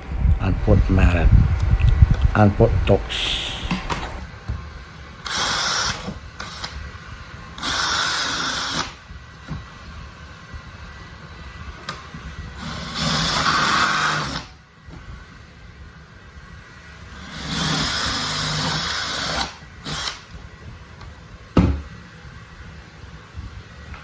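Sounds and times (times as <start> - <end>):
power drill drilling: 3.2 - 4.2, 5.2 - 6.8, 7.6 - 9.0, 12.5 - 14.5, 17.2 - 20.4.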